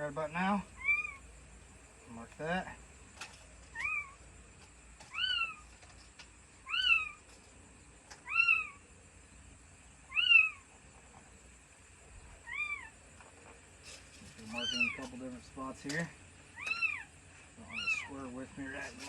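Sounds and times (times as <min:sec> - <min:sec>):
cat meowing: 0:00.8 - 0:01.2, 0:03.7 - 0:04.2, 0:05.1 - 0:05.7, 0:06.6 - 0:07.2, 0:08.2 - 0:08.8, 0:10.1 - 0:10.6, 0:12.4 - 0:13.0, 0:14.5 - 0:15.0, 0:16.5 - 0:18.2.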